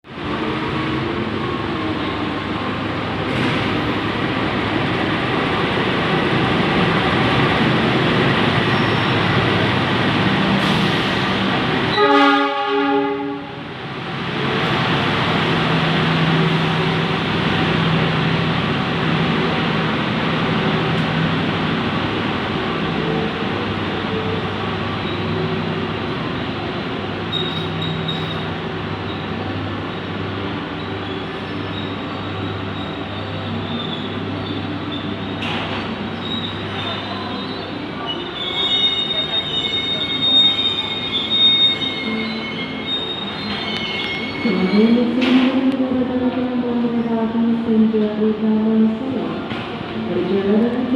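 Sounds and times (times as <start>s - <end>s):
train horn blast: 11.9s - 13.6s.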